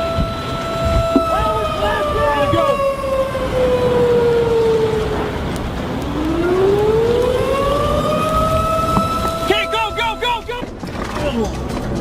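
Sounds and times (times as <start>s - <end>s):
warning siren wailing: 0.0s - 10.7s
steady low rumble: 0.0s - 12.0s.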